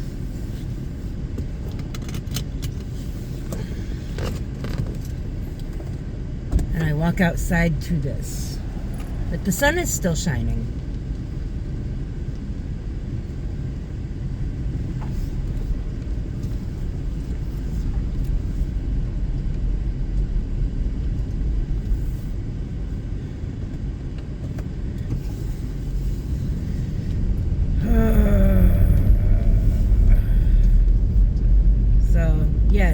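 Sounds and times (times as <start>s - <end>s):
car rumble from inside: 0.0s - 32.9s.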